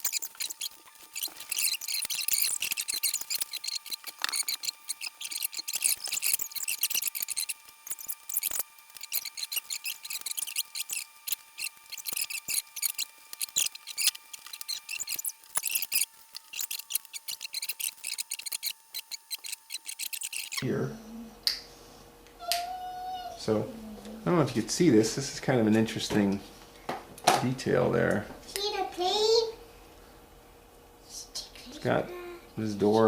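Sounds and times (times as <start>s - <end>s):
plastic bricks clicking and rattling: 0.0s - 20.6s.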